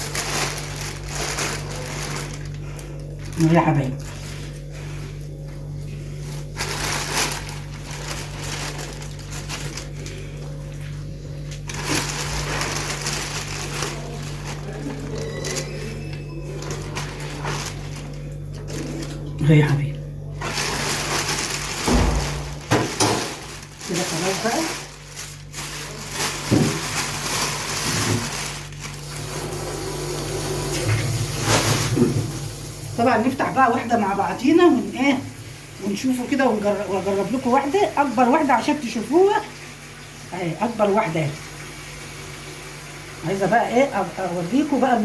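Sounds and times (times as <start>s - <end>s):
plastic bags crinkling: 0.0s - 19.7s, 20.3s - 39.0s
steady low hum: 0.0s - 29.3s.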